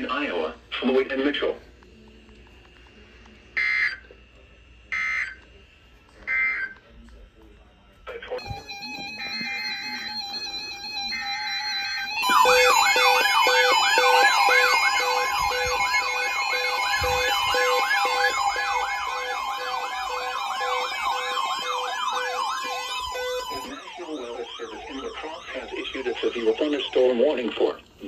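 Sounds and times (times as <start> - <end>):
electronic siren yelping: 8.4 - 27.3
warbling siren: 8.4 - 27.4.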